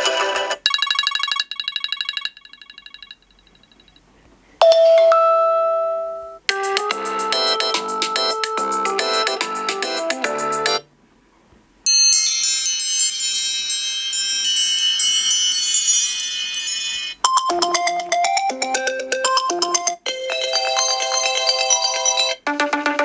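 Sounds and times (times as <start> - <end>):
phone ringtones: 0.0 - 4.0, 16.5 - 23.0.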